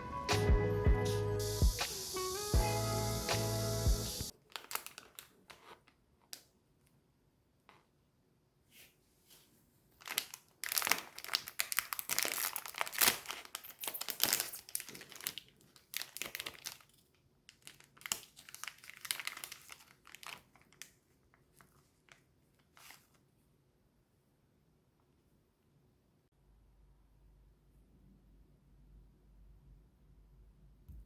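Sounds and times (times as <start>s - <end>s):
food packaging crinkling and tearing: 4.3s - 6.0s, 10.0s - 23.2s.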